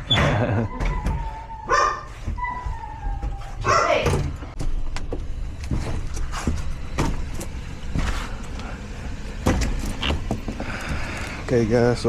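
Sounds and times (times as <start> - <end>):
low vehicle rumble: 4.3 - 12.0.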